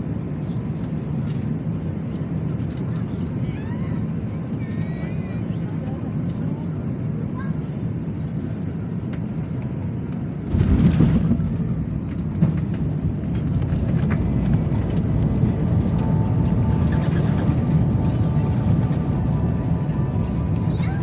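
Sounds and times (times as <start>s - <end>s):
jet engine rumble: 0.0s - 21.0s
faint whine: 10.6s - 21.0s.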